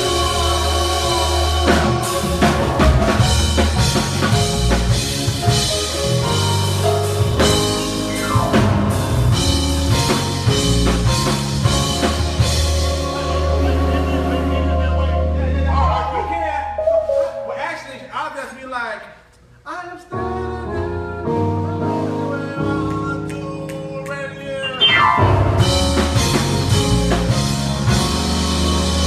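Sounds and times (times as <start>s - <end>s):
drum kit: 0.0s - 15.0s, 24.8s - 29.0s
bass guitar line: 0.0s - 17.2s, 24.9s - 29.0s
held keyboard chords: 0.0s - 18.0s, 20.1s - 29.0s.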